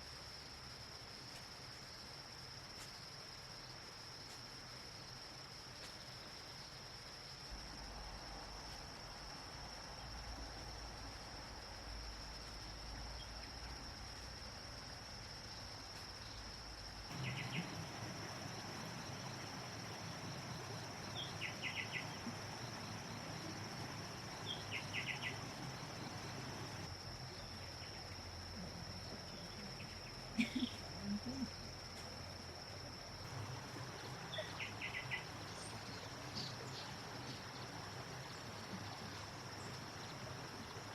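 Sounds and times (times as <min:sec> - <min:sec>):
rapid insect chirps: 0:00.0 - 0:40.9
insects trilling: 0:03.6 - 0:40.9.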